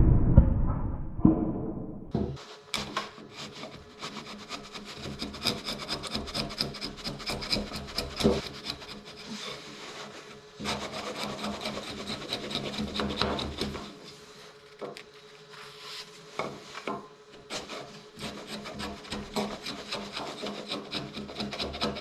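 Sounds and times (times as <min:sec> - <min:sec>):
tool rasping and scraping wood: 0:02.8 - 0:14.4, 0:17.4 - 0:22.0.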